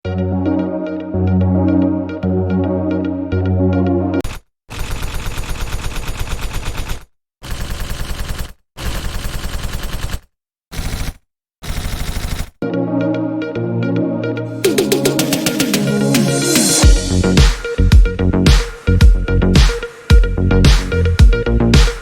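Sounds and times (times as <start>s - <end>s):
electronic music: 0.0s - 4.2s, 12.6s - 22.0s.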